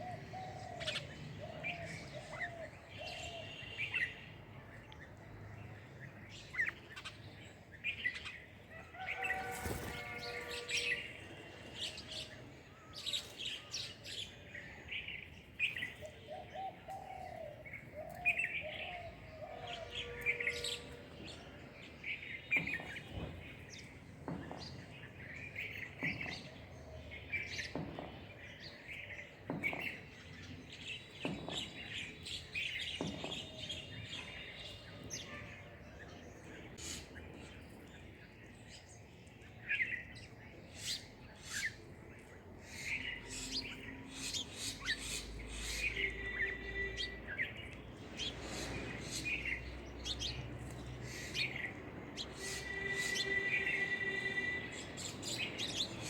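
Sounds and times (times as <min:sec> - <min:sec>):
lower pitched bird calls: 0:51.0 - 0:56.0.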